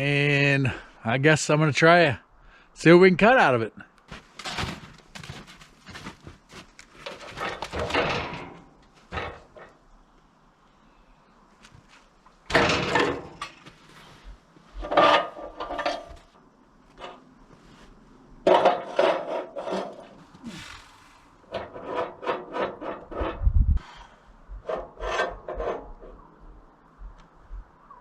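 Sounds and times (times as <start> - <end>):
wood scraping and rubbing: 24.6 - 26.2.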